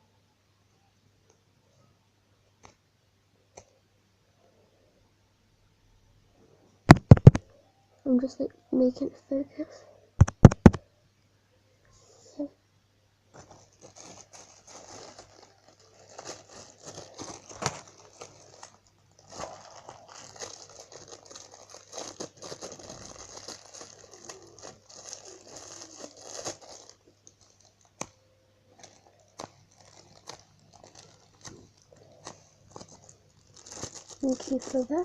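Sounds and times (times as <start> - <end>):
plastic packaging crinkling: 6.9 - 7.4, 13.3 - 28.1, 28.7 - 35.0.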